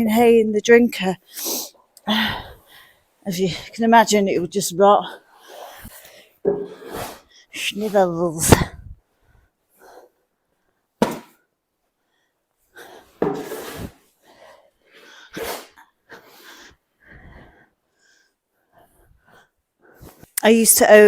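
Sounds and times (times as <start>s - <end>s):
nasal sneezes or snorts: 6.7s - 7.3s, 15.3s - 15.9s.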